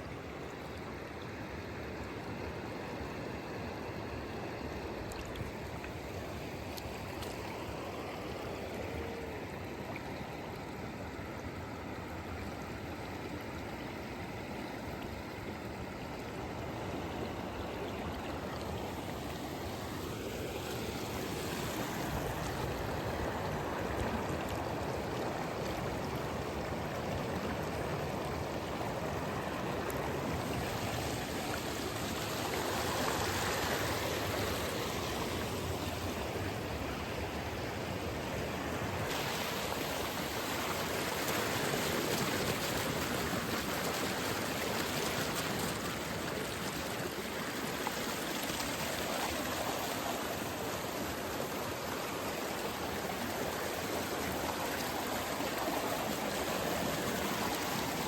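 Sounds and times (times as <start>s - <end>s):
flowing water rushing: 0.0s - 58.0s.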